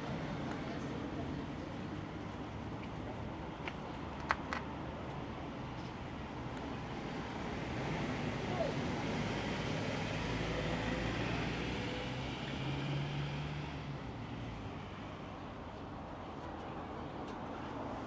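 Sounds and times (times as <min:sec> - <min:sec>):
vehicle passing on road: 0:04.2 - 0:16.8.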